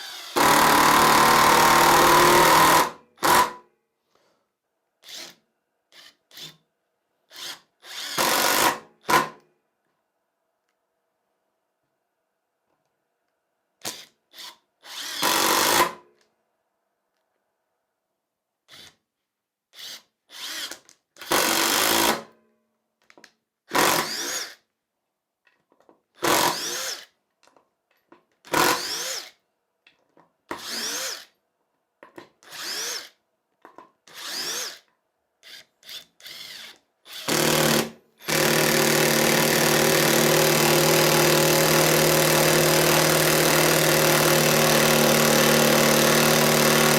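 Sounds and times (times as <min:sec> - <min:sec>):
impact driver whirring: 0:00.0 - 0:03.6.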